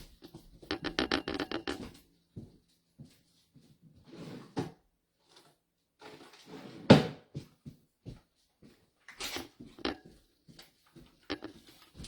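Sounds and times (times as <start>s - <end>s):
knocks and clicks of rummaging: 0.1s - 2.0s, 9.1s - 10.0s, 11.2s - 12.0s.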